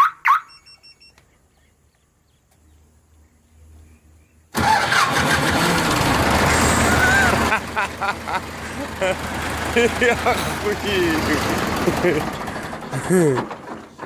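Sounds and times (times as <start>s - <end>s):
faint electronic beeps: 0.0s - 1.7s
car engine starting and running: 4.5s - 14.0s.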